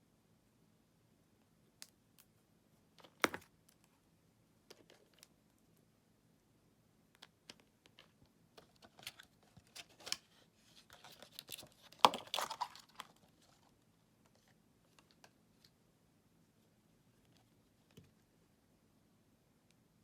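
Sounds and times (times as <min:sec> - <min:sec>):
plastic packaging crinkling and tearing: 0:11.0 - 0:13.2.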